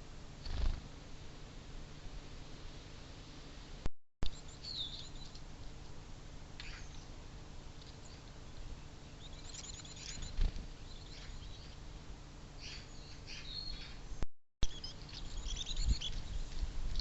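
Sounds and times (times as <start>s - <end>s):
songbirds chirping: 4.3s - 17.0s.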